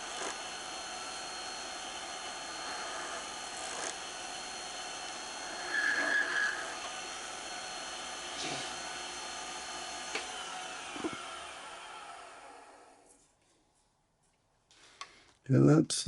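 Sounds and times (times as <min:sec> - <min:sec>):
wood lathe whine: 0:00.0 - 0:13.1
turning tool squealing: 0:01.6 - 0:08.8.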